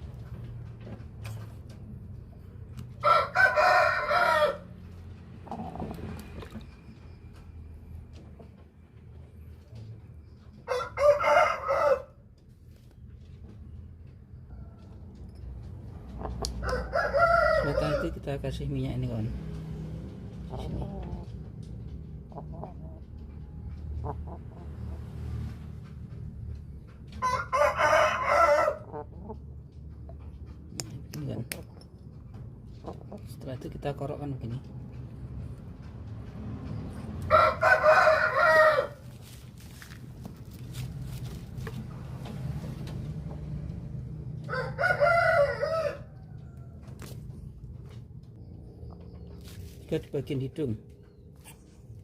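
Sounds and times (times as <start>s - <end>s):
rooster crowing: 3.0s - 4.8s, 10.6s - 12.2s, 16.6s - 18.2s, 27.2s - 28.9s, 37.2s - 39.1s, 44.4s - 46.8s.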